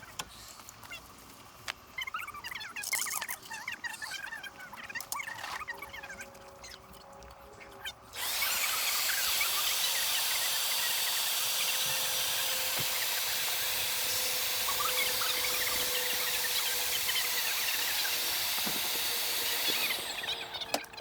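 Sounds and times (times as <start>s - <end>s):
electric air pump hissing: 8.2s - 20.8s.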